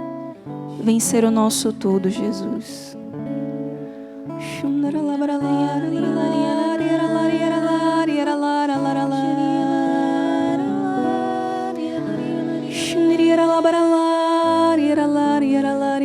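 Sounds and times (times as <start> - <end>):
slow worship music: 0.0 - 16.0.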